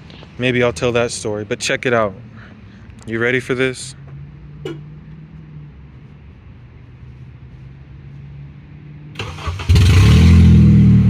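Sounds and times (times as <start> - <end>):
engine starter cranking: 9.2 - 10.3.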